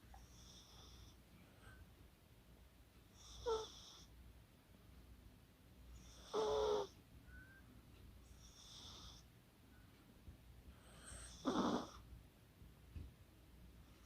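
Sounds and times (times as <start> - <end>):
dog snoring: 0.2 - 1.2, 3.2 - 4.1, 6.0 - 7.0, 8.3 - 9.2, 10.8 - 12.0
soft hissing breath: 10.6 - 12.0.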